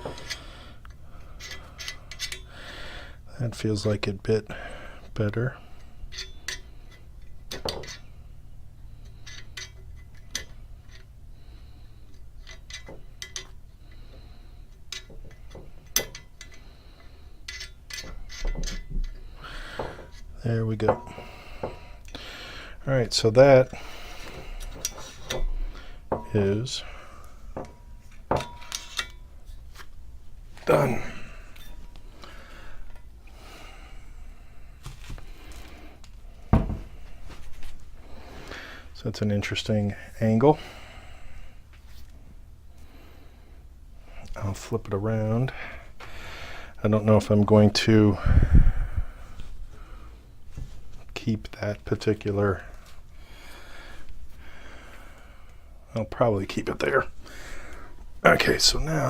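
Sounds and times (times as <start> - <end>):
metal clamp clicks and scrapes: 0.1 - 2.5, 9.0 - 11.1, 17.4 - 19.2, 28.0 - 30.0
light handling clicks and rustling: 12.0 - 21.8.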